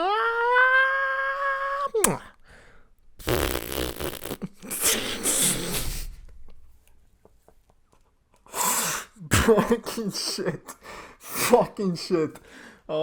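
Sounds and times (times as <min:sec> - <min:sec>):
cartoon fart noise: 0:03.2 - 0:06.3.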